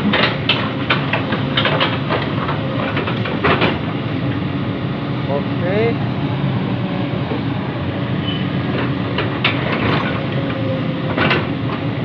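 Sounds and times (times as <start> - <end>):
metallic clanks and knocks: 0.0 - 4.0, 8.7 - 10.5, 11.1 - 11.8
excavator diesel engine: 0.0 - 12.0.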